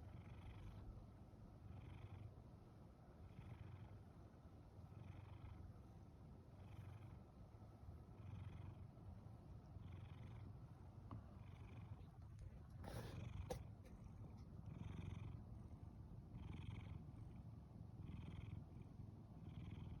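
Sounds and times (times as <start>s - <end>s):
cat snoring rasp: 12.8s - 13.6s, 18.0s - 18.6s.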